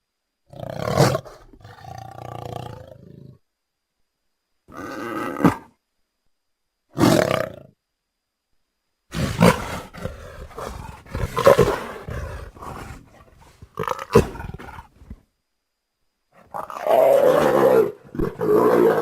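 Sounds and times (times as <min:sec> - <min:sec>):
rough growls: 0:09.1 - 0:15.2, 0:16.4 - 0:19.0
creature roars: 0:13.8 - 0:14.9, 0:16.5 - 0:19.0.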